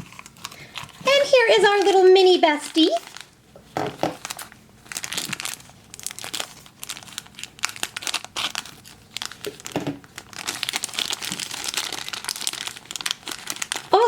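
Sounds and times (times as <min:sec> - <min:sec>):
toy packaging crinkling: 0:00.0 - 0:14.0.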